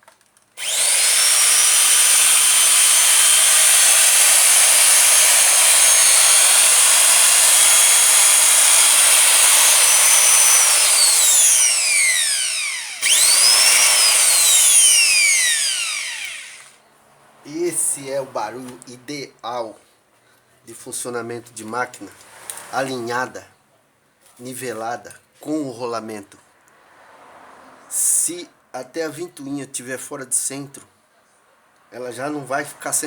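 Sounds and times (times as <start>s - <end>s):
angle grinder high whine: 0.6s - 16.8s.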